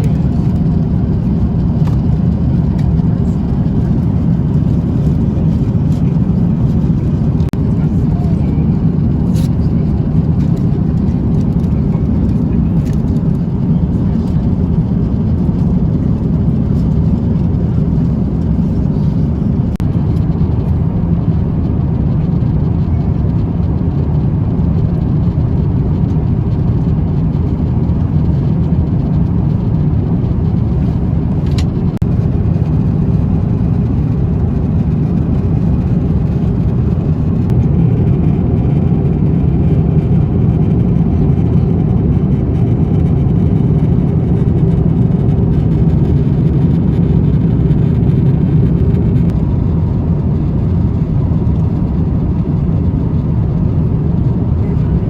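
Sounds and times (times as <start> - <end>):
aircraft cabin rumble: 0.0 - 55.0.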